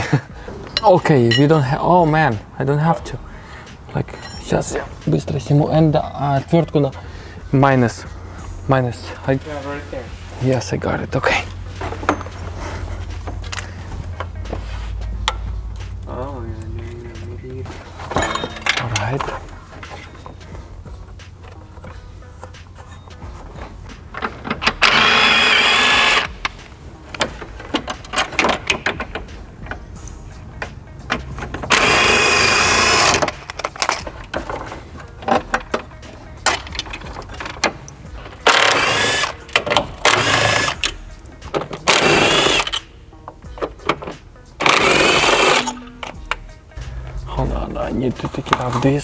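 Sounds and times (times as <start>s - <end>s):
clicks and clatter of handled parts: 18.1s - 20.5s, 32.7s - 46.5s
electric drill motor whine: 24.8s - 26.3s, 31.7s - 33.2s, 38.5s - 39.3s, 41.9s - 42.7s, 44.6s - 45.7s.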